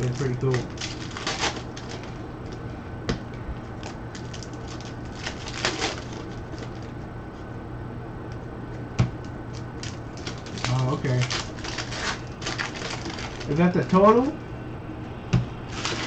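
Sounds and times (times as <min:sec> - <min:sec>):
trading cards rustling: 0:00.0 - 0:02.6, 0:03.8 - 0:06.9, 0:09.8 - 0:14.4, 0:15.7 - 0:16.0
steady low hum: 0:00.0 - 0:16.0.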